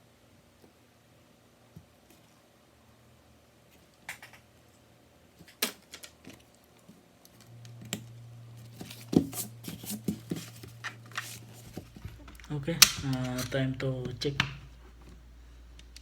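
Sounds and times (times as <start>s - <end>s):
steady low hum: 7.2s - 16.0s.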